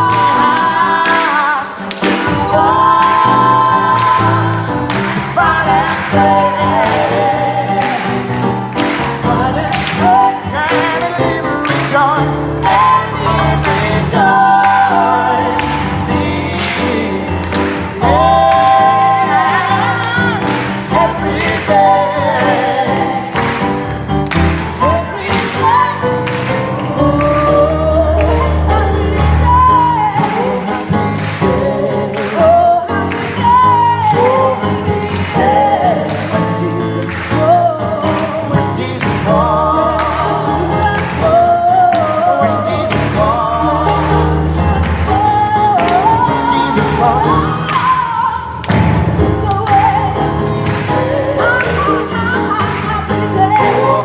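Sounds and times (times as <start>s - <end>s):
gospel choir singing: 0.0s - 54.0s
instrumental accompaniment: 0.0s - 54.0s.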